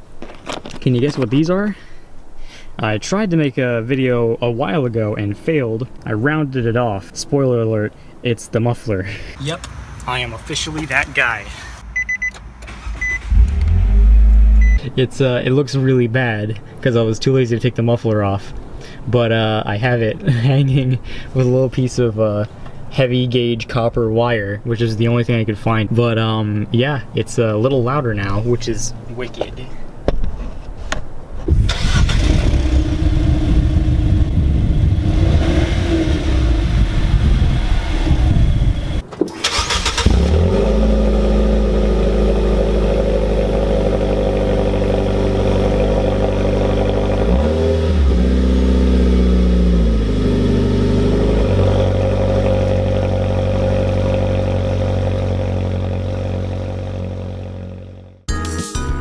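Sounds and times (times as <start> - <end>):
loud car engine without muffler: 12.6 - 14.9, 31.5 - 58.3.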